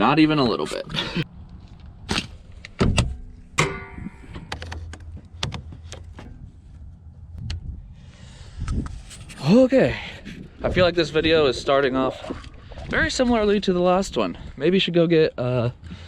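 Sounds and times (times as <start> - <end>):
clicks and knocks: 2.7 - 6.5.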